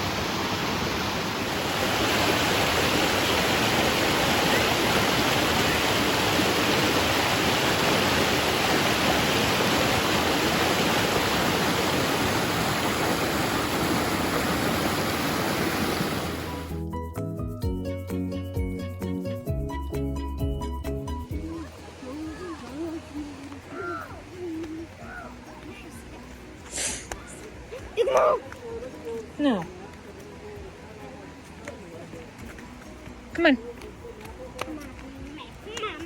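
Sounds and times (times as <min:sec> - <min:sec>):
small waterfall rushing: 0:00.0 - 0:16.8, 0:21.5 - 0:36.0
music with steady notes: 0:16.7 - 0:36.0.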